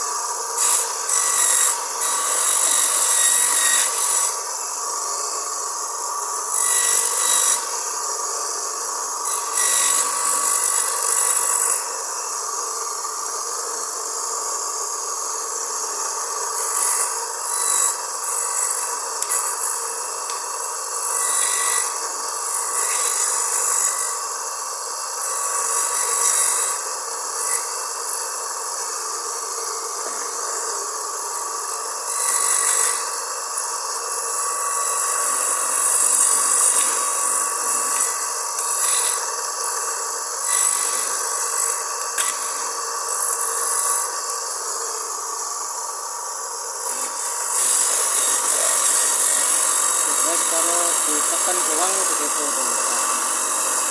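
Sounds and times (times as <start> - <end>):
electric grater motor whine: 0.0 - 53.9
coconut rasping on grater: 0.6 - 4.4, 9.2 - 11.8, 16.6 - 20.1, 20.7 - 24.2, 34.3 - 44.1, 46.8 - 53.9.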